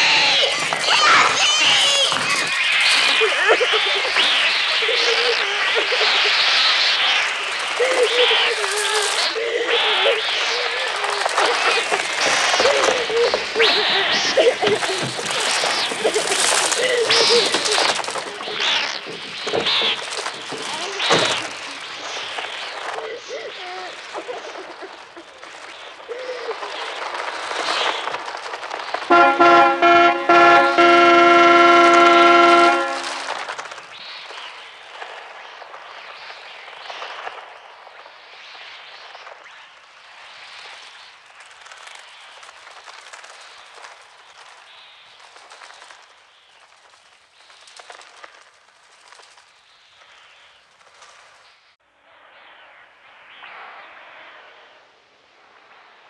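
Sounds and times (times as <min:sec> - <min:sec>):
crows shrieking and cawing: 0:00.0 - 0:25.2
children screaming: 0:00.0 - 0:33.6
wings beating: 0:00.0 - 0:51.6.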